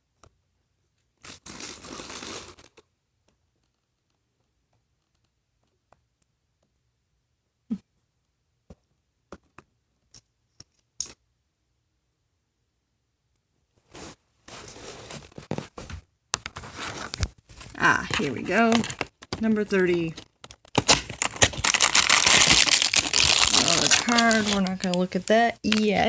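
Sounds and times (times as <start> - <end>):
plastic packaging crinkling: 16.6 - 26.0.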